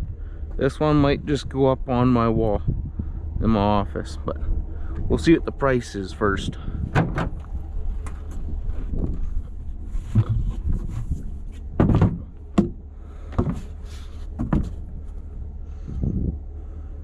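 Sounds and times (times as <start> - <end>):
low steady hum: 0.0 - 17.0
cooler knocks and thumps: 10.1 - 11.2, 11.8 - 13.7, 14.3 - 14.9.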